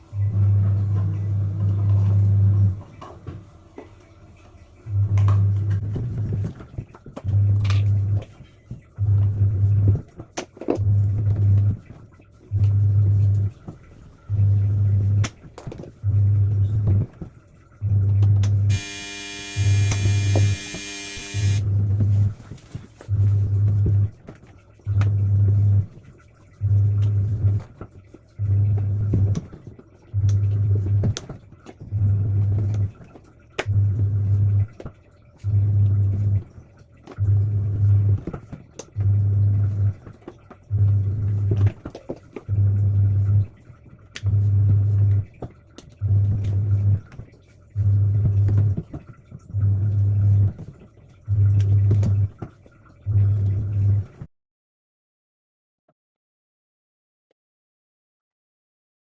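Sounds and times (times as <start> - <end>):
bright synth chord: 18.7 - 21.6
music with heavy bass pulse: 18.7 - 22.2.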